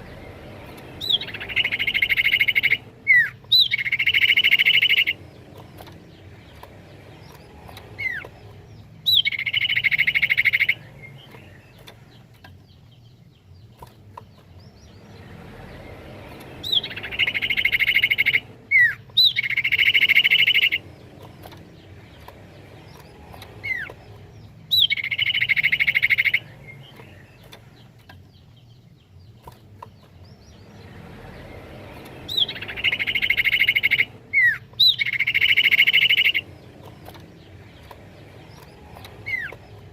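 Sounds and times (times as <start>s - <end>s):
bird trilled calls: 0.0s - 39.9s
faint bird chirps: 0.0s - 39.9s.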